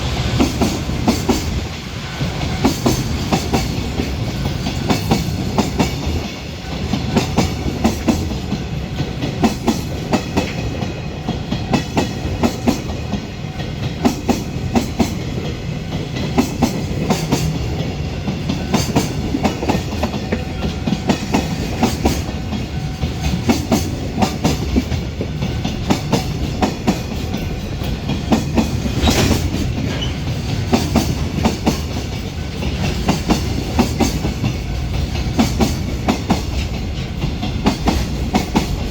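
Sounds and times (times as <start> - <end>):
train low rumble: 0.0 - 38.9
train wheels clacking over rail joints: 0.0 - 38.9.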